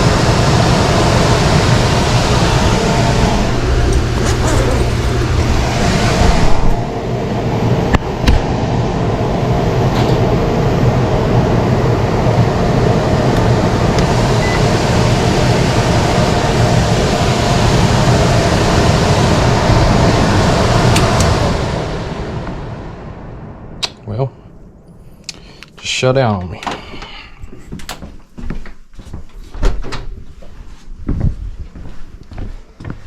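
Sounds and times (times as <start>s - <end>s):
blower humming with rushing air: 0.0s - 28.6s.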